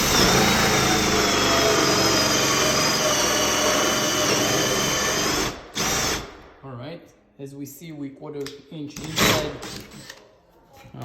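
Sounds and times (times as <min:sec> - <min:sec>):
power drill hole saw cutting: 0:00.0 - 0:06.4.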